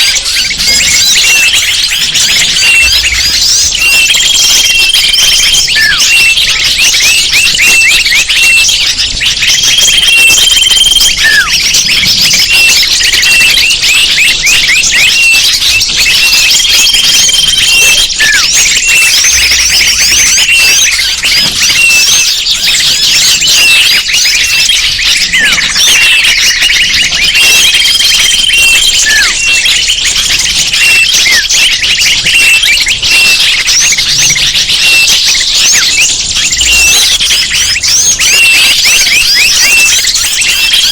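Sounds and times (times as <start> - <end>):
small birds chirping: 0.0 - 40.9
whistled bird calls: 0.0 - 40.9.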